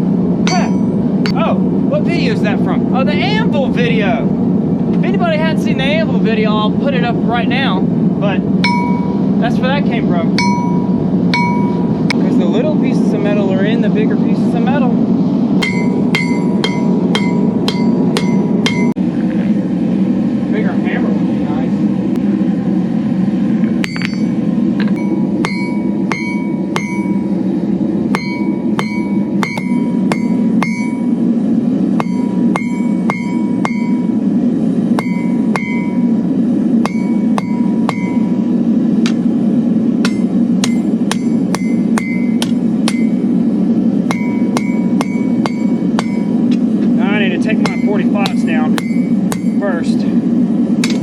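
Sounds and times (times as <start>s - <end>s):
steady low hum: 0.0s - 51.0s
hammer striking metal on anvil: 0.4s - 1.4s, 8.6s - 9.3s, 10.4s - 12.2s, 15.6s - 19.0s, 23.8s - 27.4s, 28.1s - 31.2s, 32.0s - 34.3s, 34.9s - 39.2s, 40.0s - 43.3s, 44.0s - 46.6s, 47.5s - 49.7s, 50.8s - 51.0s.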